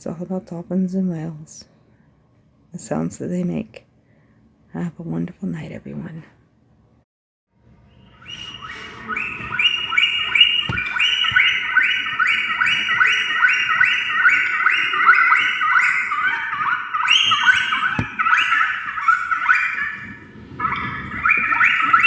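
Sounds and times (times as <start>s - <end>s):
dolphins whistling: 7.9s - 22.0s.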